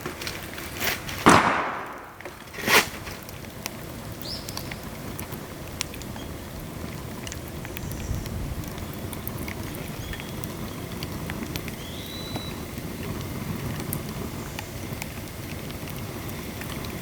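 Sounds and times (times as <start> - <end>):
bamboo sections popping: 0.0 - 6.2
bamboo fire crackling: 0.0 - 17.0.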